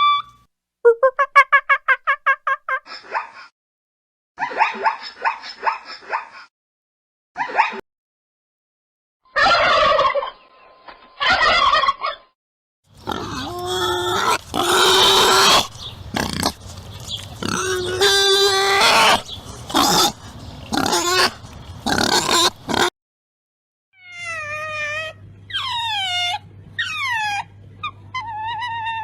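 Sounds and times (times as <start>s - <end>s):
wavering animal cries: 9.3s - 10.3s, 13.1s - 16.6s, 17.4s - 22.9s, 24.0s - 29.0s
harsh rasping animal calls: 12.9s - 22.9s, 24.1s - 29.0s.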